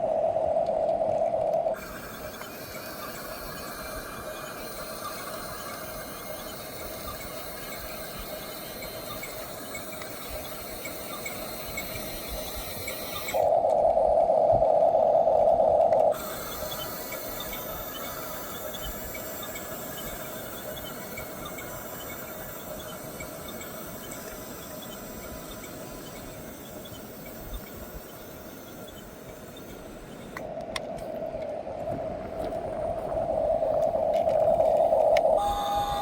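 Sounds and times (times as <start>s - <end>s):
toy bulldozer motor whining: 35.4s - 36.0s.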